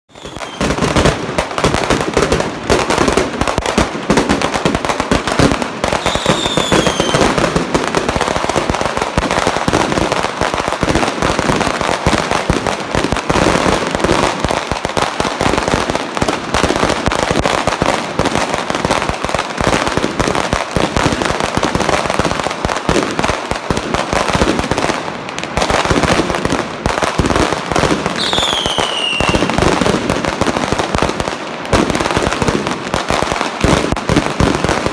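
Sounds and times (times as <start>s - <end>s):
falling firework whistle: 0.1s - 1.1s, 5.8s - 7.5s, 28.2s - 29.6s
firecrackers crackling: 0.1s - 34.9s.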